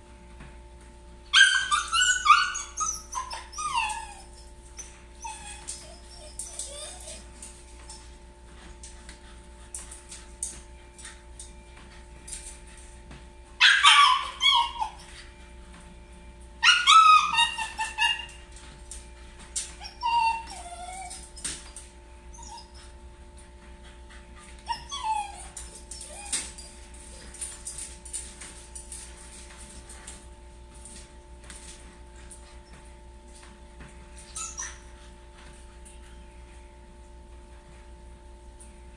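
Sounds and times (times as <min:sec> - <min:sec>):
dog whining: 0:01.3 - 0:07.5, 0:13.6 - 0:15.4, 0:16.6 - 0:18.5, 0:19.7 - 0:21.4, 0:22.3 - 0:23.0, 0:24.3 - 0:27.4, 0:34.3 - 0:35.0
low hum: 0:02.8 - 0:38.9.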